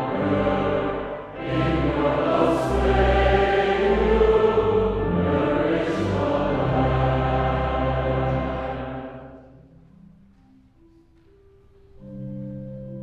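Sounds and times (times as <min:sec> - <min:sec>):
choir singing: 0:00.0 - 0:09.6.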